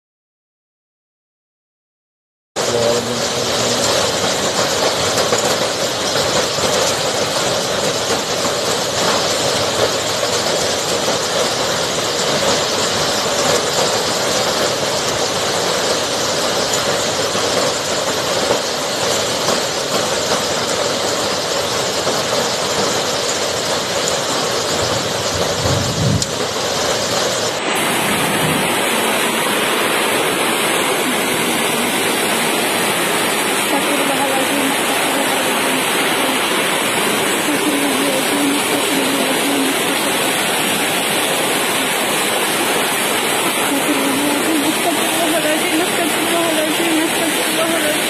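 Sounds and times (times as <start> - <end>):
hail and heavy rain: 2.6 - 48.0
strong wind: 24.4 - 48.0.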